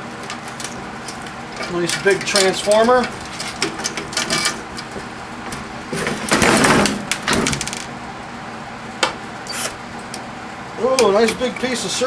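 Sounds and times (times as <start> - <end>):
metal and plastic parts clattering: 5.9 - 7.9.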